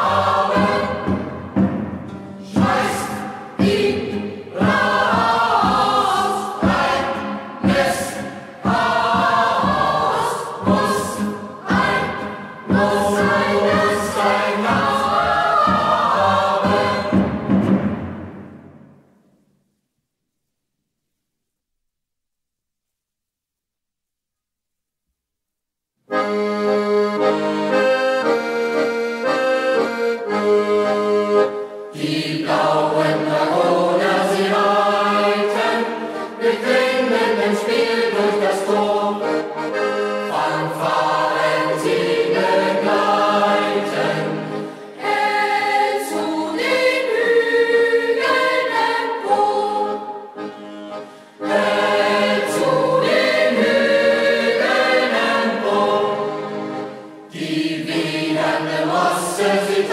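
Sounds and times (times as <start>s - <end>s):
accordion music: 0.0s - 17.5s, 26.1s - 59.9s.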